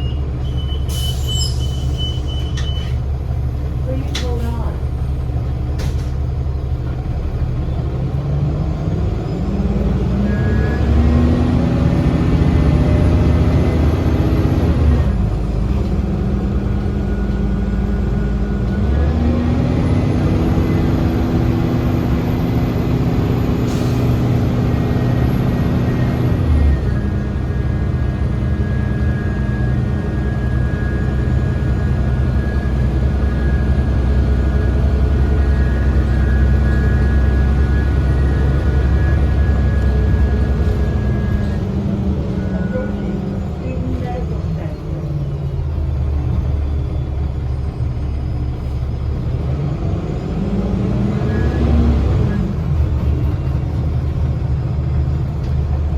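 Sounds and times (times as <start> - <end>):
bus diesel engine accelerating: 0.0 - 55.9.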